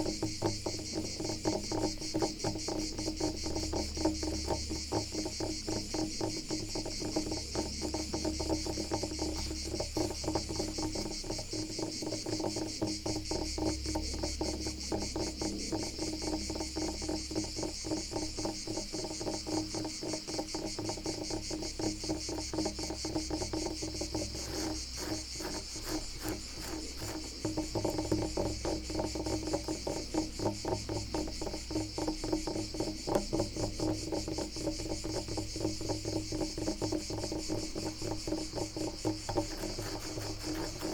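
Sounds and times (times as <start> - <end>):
crickets chirping: 0.0 - 40.9
scratching strokes on wood: 22.5 - 32.1, 33.1 - 40.9.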